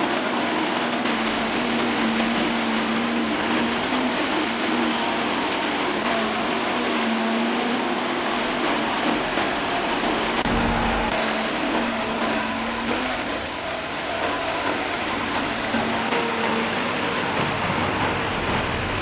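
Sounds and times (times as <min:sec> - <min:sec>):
heavy machine engine running: 0:00.0 - 0:19.0
low wavering hum: 0:10.4 - 0:12.9.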